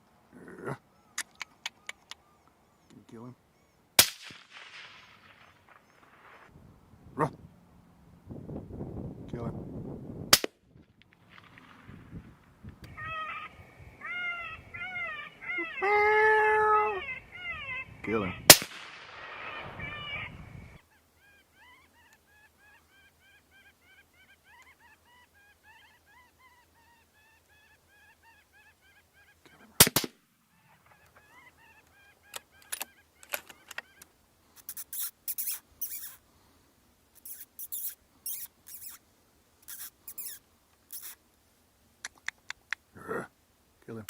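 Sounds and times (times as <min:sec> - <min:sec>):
rifle shot: 0:04.0 - 0:06.5, 0:18.5 - 0:19.8, 0:29.8 - 0:30.2.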